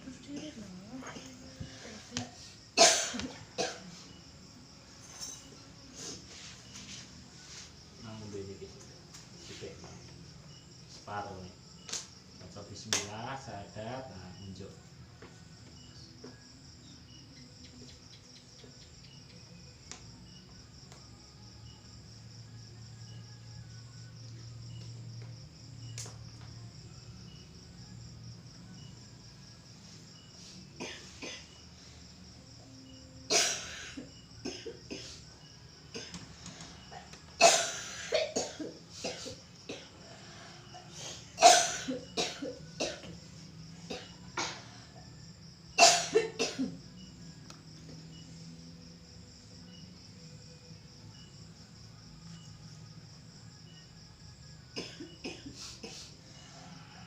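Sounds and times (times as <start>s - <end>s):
crickets chirring: 0.0s - 57.0s
person coughing: 2.8s - 3.9s, 30.8s - 31.5s, 33.3s - 35.2s, 37.4s - 39.9s, 41.4s - 43.1s, 45.8s - 46.8s, 54.8s - 56.1s.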